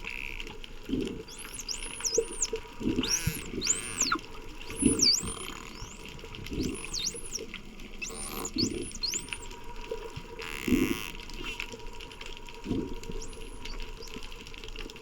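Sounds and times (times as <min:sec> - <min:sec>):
dolphins whistling underwater: 0:00.8 - 0:11.6, 0:12.6 - 0:14.8
bubbling bursts: 0:00.9 - 0:09.7.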